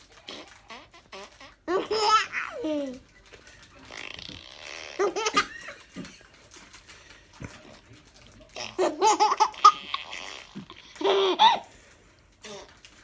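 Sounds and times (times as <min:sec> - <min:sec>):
baby laughing: 0:00.4 - 0:03.0, 0:04.8 - 0:05.8, 0:08.6 - 0:11.7.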